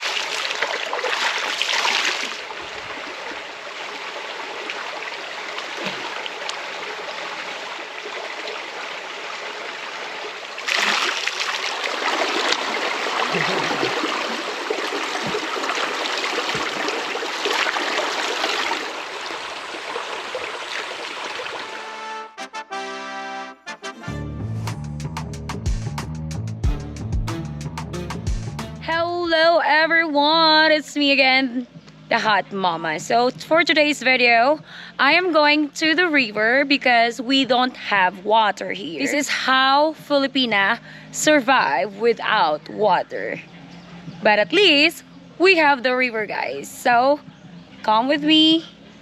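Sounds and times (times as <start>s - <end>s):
river water rushing: 0.0s - 22.2s.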